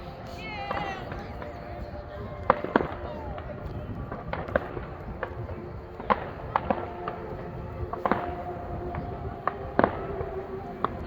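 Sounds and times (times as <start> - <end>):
steady humming tone: 0.0 - 11.0
fireworks bangs and pops: 2.4 - 7.3, 7.9 - 11.0.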